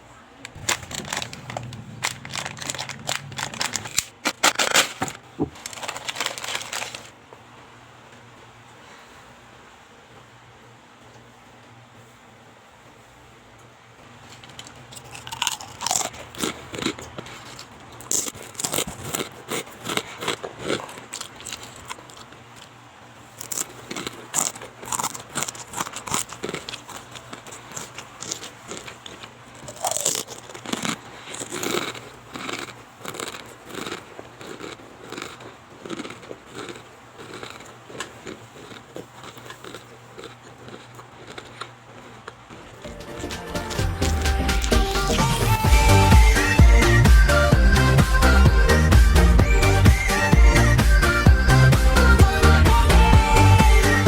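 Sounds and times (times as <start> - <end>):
chips crunching while chewed: 0.5 - 7.2, 14.2 - 45.5.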